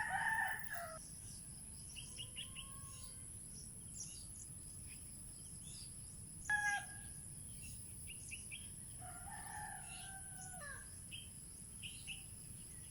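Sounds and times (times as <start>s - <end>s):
rooster crowing: 0.0s - 1.0s, 9.0s - 10.8s
insect hiss: 0.0s - 12.9s
small birds chirping: 0.7s - 12.9s.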